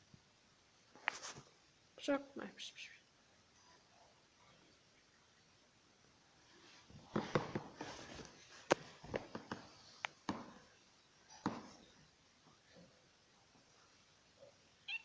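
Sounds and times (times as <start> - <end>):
rustling: 0.9 - 1.6, 6.4 - 14.2.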